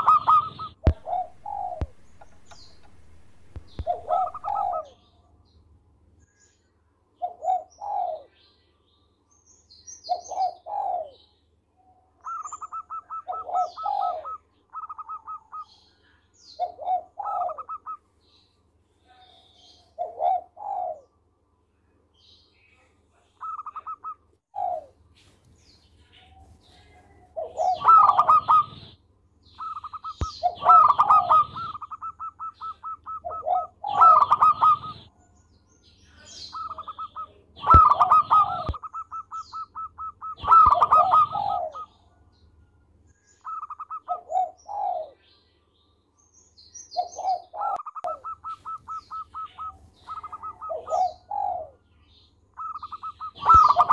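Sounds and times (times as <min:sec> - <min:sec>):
doves cooing: 0:00.0 - 0:05.1, 0:07.2 - 0:08.3, 0:10.1 - 0:11.2, 0:12.2 - 0:15.8, 0:16.6 - 0:18.0, 0:19.4 - 0:21.1, 0:23.4 - 0:25.0, 0:26.3 - 0:29.0, 0:29.6 - 0:35.1, 0:36.3 - 0:42.2, 0:43.4 - 0:45.2, 0:47.0 - 0:51.9, 0:52.5 - 0:53.9.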